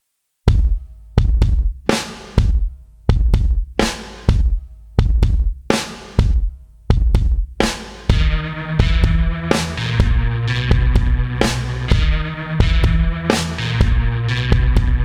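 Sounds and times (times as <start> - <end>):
heavy drum beat: 0.5 - 15.0
bass line: 8.1 - 15.0.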